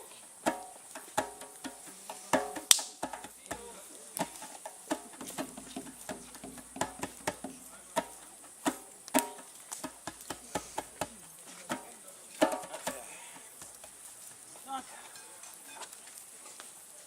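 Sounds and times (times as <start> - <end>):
campfire crackling: 0.0 - 17.0.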